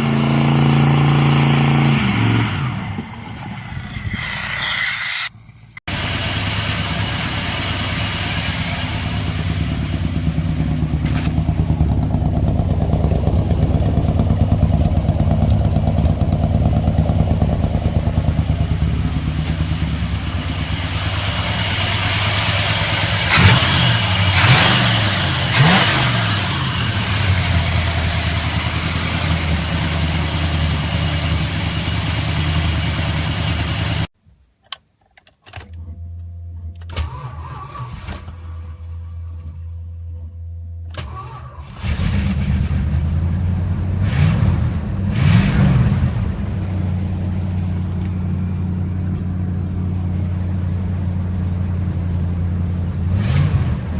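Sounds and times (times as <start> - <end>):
loud exhaust bangs: 0.0 - 34.1
vehicle engine revving: 0.0 - 34.1, 40.9 - 53.9.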